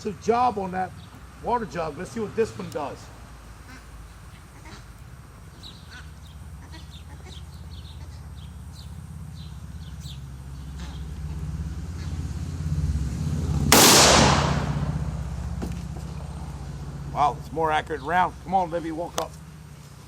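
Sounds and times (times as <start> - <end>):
rifle shot: 13.7 - 15.3.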